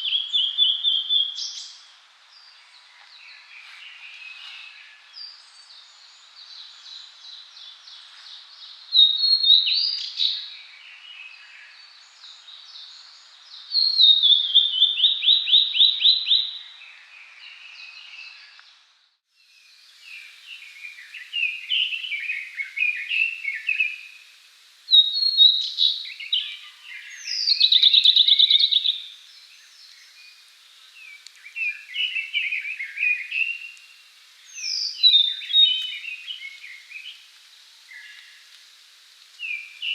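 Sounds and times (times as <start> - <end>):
bird singing whistled notes: 0.0 - 1.9, 8.6 - 18.7, 19.6 - 24.3, 24.9 - 37.3, 39.4 - 39.9.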